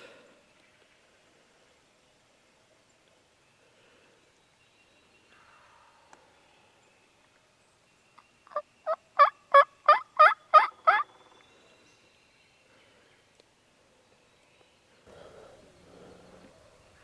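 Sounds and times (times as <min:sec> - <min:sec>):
turkey yelping: 0:08.5 - 0:11.1.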